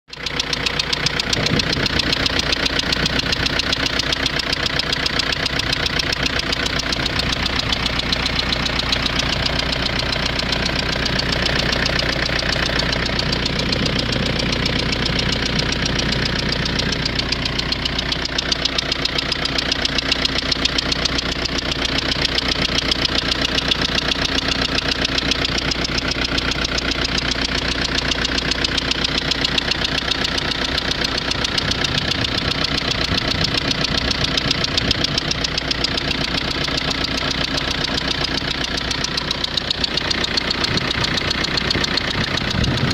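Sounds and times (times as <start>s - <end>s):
diesel engine idling with knock: 0.1s - 42.9s.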